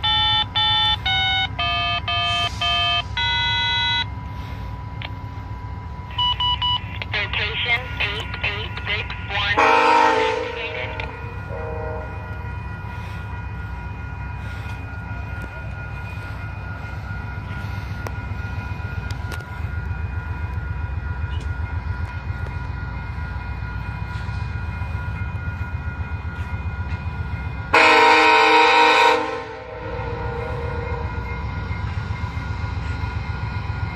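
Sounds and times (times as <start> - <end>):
diesel locomotive engine rumble: 0.0 - 33.9
train horn blast: 9.6 - 12.3, 27.7 - 31.1.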